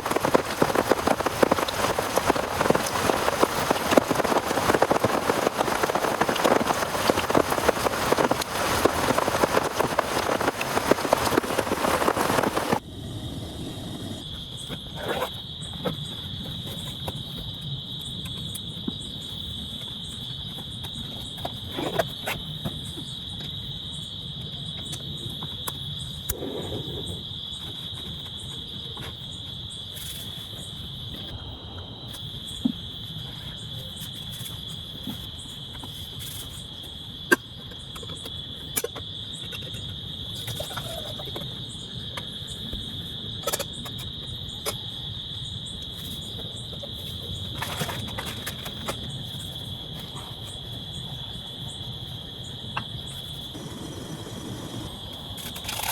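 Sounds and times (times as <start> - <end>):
heavy rain: 0.0 - 12.8
crickets chirping: 0.0 - 55.9.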